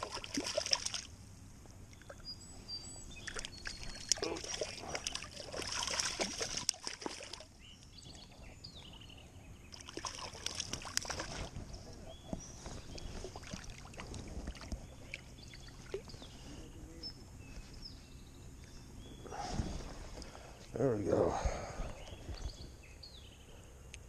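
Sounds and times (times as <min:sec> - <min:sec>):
water splashing: 0:00.0 - 0:01.1, 0:03.2 - 0:07.5, 0:09.7 - 0:12.1, 0:12.7 - 0:16.2
small bird chirping: 0:01.9 - 0:05.4, 0:14.6 - 0:19.5.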